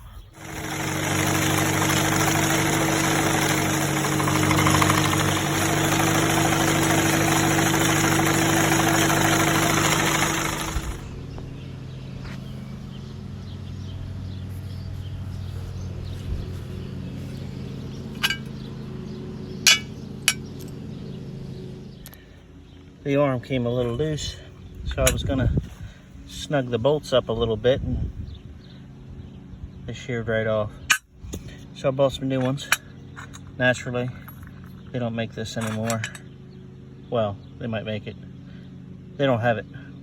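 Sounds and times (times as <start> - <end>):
quiet engine hum: 0.0 - 40.0
tractor engine with mower clattering: 0.4 - 14.9, 16.1 - 25.6, 30.8 - 37.6.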